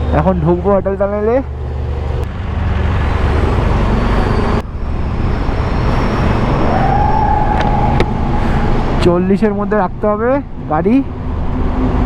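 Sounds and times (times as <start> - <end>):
motorcycle engine running: 0.0 - 9.5
wind and road rush: 0.0 - 12.0
steady single tone: 2.3 - 9.2.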